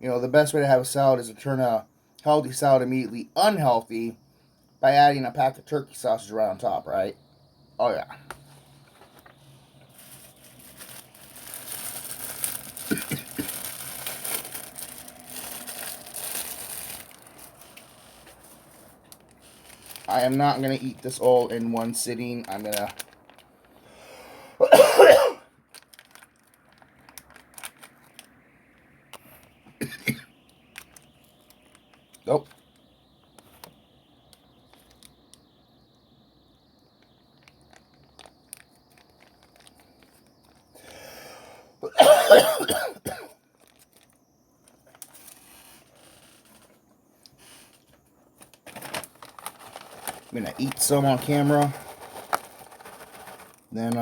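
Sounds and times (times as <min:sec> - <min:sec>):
plastic food packaging crinkling: 0:08.8 - 0:23.8, 0:25.6 - 0:28.4, 0:29.4 - 0:35.4, 0:37.0 - 0:40.8, 0:43.5 - 0:54.0.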